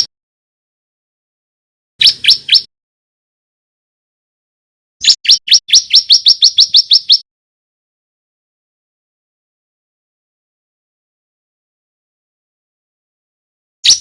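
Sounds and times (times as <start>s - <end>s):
bird rising chirps: 2.0s - 2.7s, 5.0s - 7.2s.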